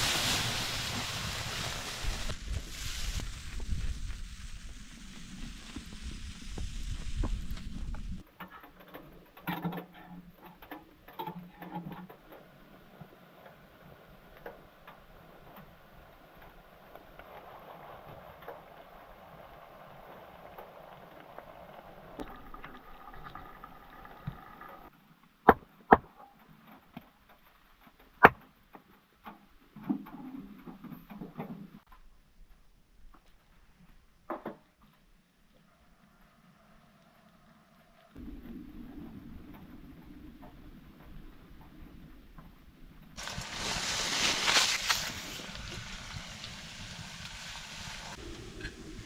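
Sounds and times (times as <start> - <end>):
low scraping and rustling: 38.0 - 49.0.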